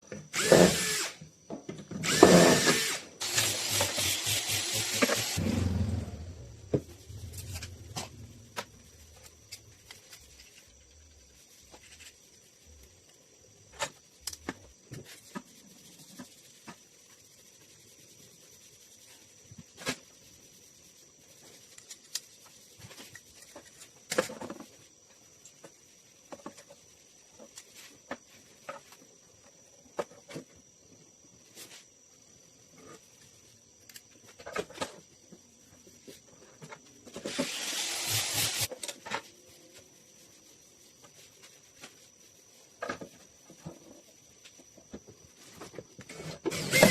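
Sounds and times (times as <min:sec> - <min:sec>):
power drill winding down: 0:00.4 - 0:01.2, 0:02.0 - 0:06.2, 0:37.3 - 0:38.7, 0:46.5 - 0:46.9.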